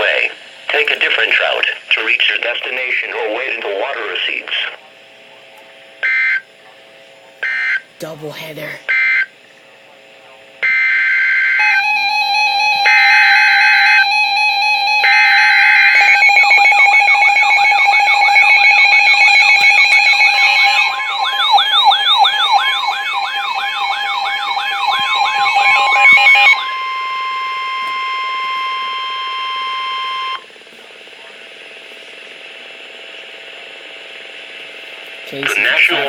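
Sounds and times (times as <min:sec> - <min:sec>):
wavering siren-like wail: 0:10.7 - 0:30.4
electronic alert tones: 0:11.6 - 0:30.4
steady alert tone: 0:15.0 - 0:30.4.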